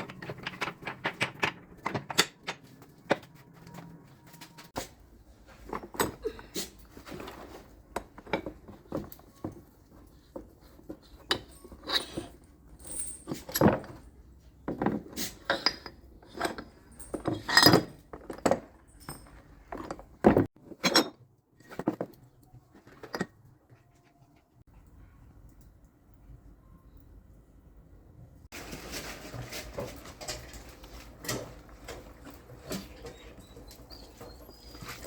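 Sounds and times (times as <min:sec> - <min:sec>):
metal tools clinking: 0:00.0 - 0:04.6, 0:05.4 - 0:22.2, 0:29.0 - 0:35.0.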